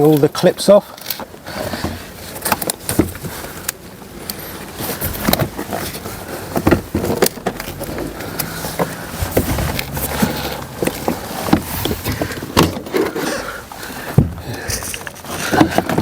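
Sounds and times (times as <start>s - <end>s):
door panel rattling and scraping: 5.0s - 16.0s.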